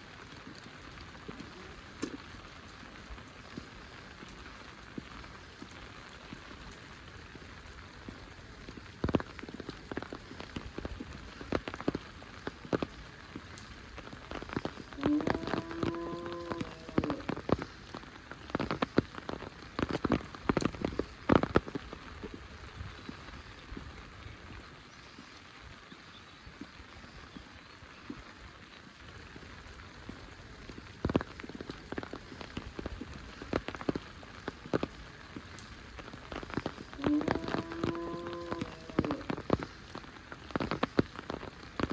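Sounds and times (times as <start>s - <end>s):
heavy rain: 0.0s - 41.9s.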